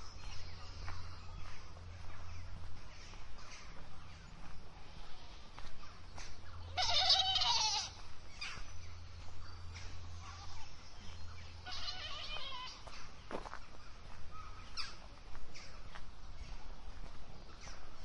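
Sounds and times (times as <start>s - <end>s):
birds chirping: 0.0s - 18.0s
goats bleating: 6.8s - 8.0s, 11.6s - 12.8s.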